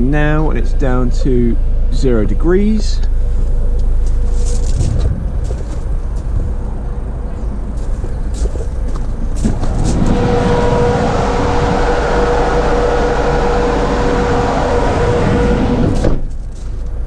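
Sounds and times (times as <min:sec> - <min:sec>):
chiller unit humming: 0:00.0 - 0:17.0
van engine idling: 0:00.0 - 0:17.0
hiss with steady whine: 0:09.6 - 0:16.2.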